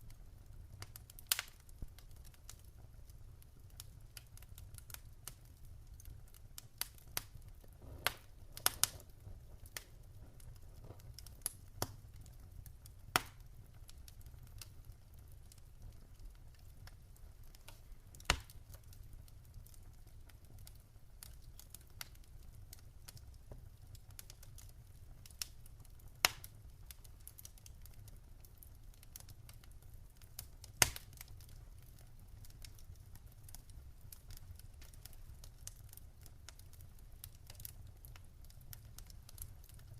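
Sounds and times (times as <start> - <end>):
campfire wood crackling: 0.0 - 39.9
sharp pops of fire: 0.8 - 2.6, 6.1 - 12.3, 13.0 - 14.7, 16.8 - 19.0, 23.1 - 27.7, 30.3 - 31.5.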